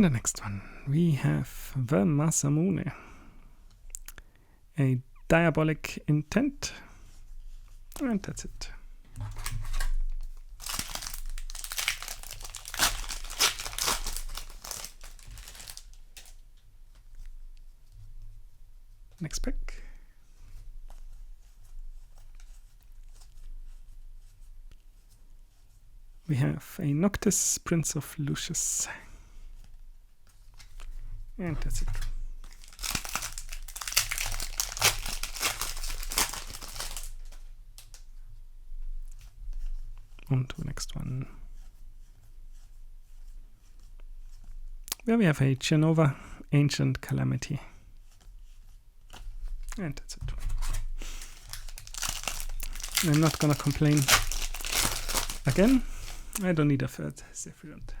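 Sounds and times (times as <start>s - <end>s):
foil wrapper tearing and crinkling: 10.4s - 16.4s, 32.4s - 38.0s, 51.0s - 56.4s.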